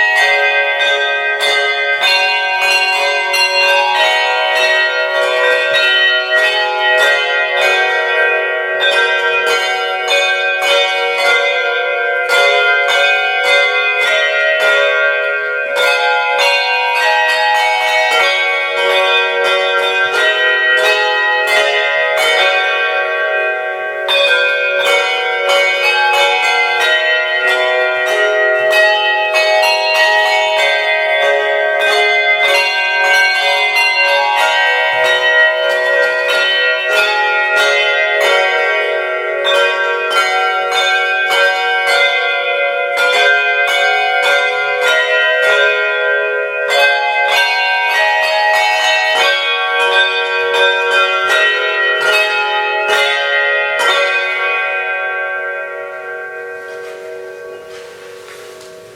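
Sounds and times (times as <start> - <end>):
handbells ringing a carol: 0.0 - 58.9.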